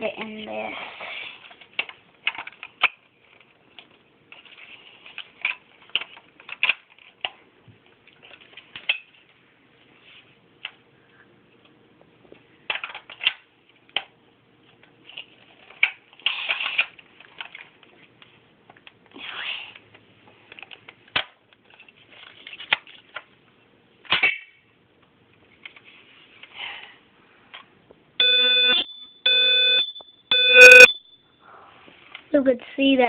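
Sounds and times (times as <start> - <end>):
plastic clicking and rattling: 1.4 - 7.4
smoke detector harsh beep: 28.2 - 31.4.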